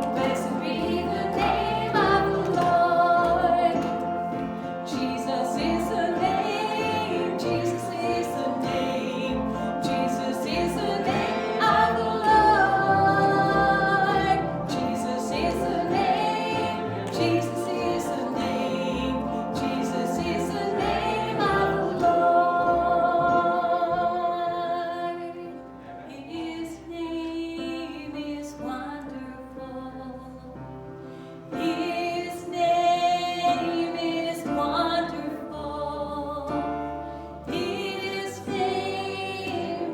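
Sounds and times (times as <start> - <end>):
instrumental accompaniment with bass: 0.0 - 24.7
group singing worship song: 0.0 - 26.8, 31.1 - 39.9.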